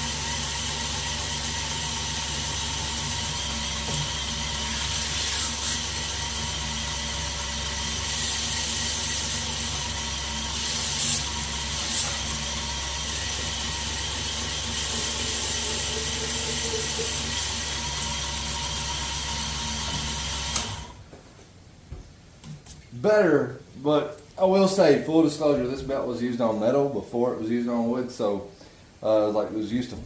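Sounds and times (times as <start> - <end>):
belt grinder running: 0.0 - 21.0.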